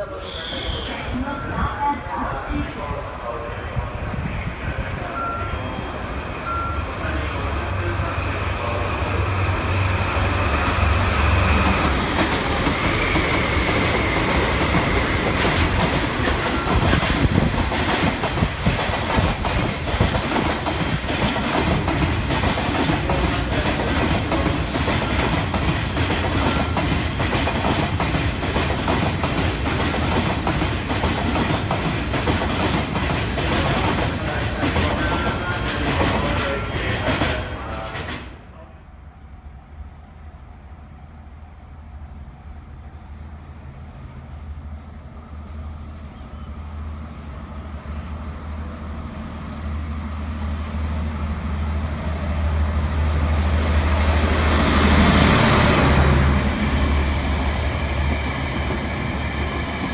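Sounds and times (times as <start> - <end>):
locomotive hum: 0.0 - 30.8.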